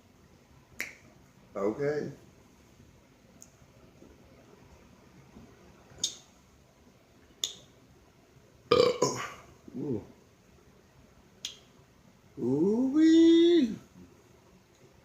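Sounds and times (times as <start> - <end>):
man burping: 8.7 - 10.0.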